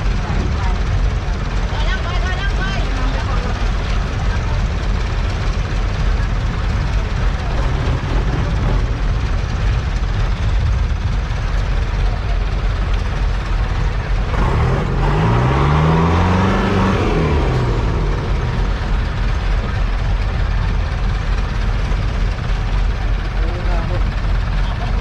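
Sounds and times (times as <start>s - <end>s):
wind buffeting microphone: 2.4s - 14.3s.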